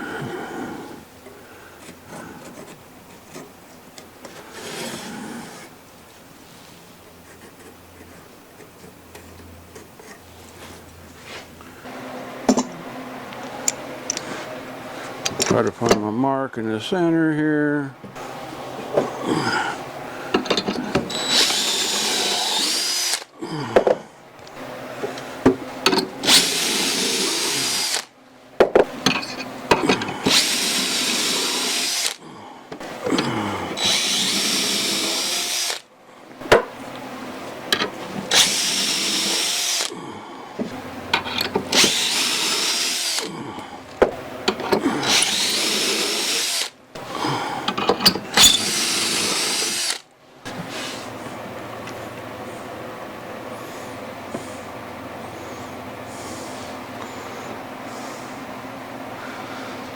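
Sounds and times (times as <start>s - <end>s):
power drill boring into wood: 20.4s - 23.3s, 26.2s - 28.2s, 29.1s - 32.2s, 33.0s - 35.9s, 38.2s - 40.0s, 41.2s - 43.3s, 44.6s - 50.1s.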